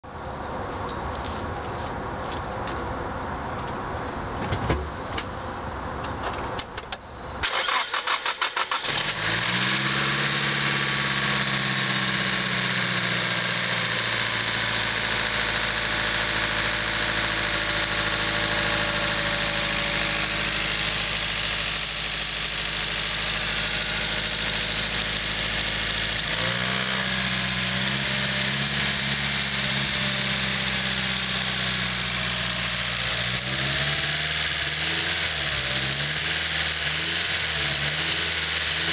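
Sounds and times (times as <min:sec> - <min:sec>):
starter cranking engine: 0:07.4 - 0:10.8
engine idling: 0:07.4 - 0:38.9.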